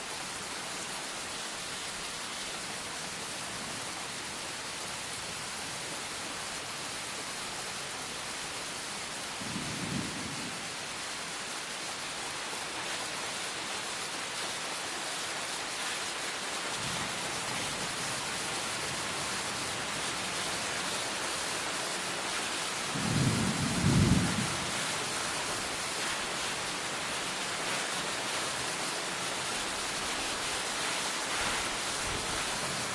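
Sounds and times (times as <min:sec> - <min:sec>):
steady rain hissing: 0:00.0 - 0:32.9
thunder rolling: 0:22.9 - 0:24.7.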